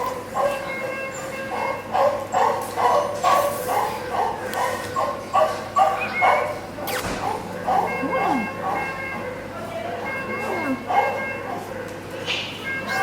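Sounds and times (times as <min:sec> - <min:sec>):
dog yipping: 0:00.3 - 0:08.9, 0:10.9 - 0:11.9.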